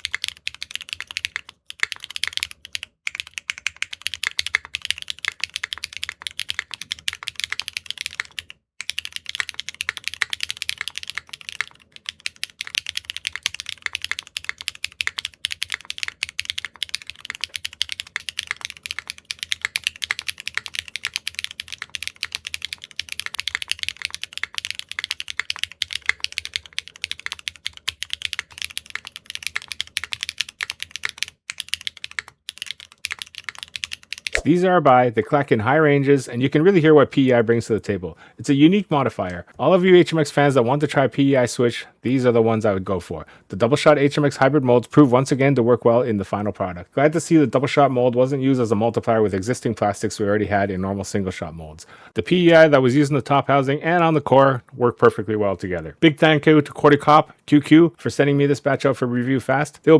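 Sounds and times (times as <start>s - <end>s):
fast mechanical keyboard typing: 0.0s - 34.4s.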